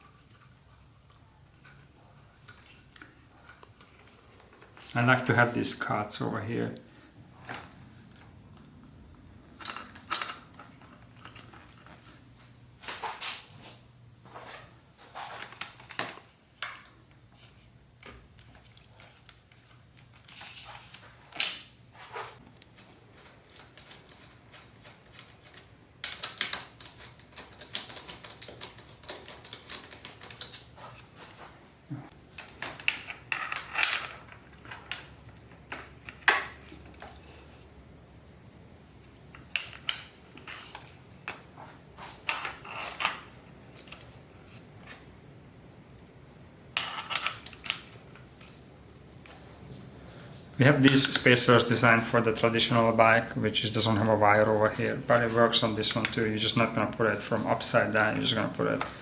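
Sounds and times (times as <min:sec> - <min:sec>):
metal parts and tools clinking: 0:08.8 - 0:12.1, 0:32.3 - 0:37.4, 0:39.3 - 0:45.0, 0:46.8 - 0:48.4.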